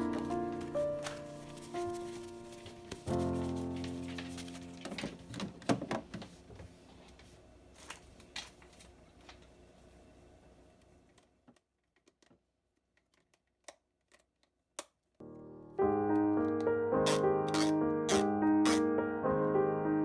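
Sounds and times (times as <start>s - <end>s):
piano music: 0.0s - 5.7s, 15.2s - 20.0s.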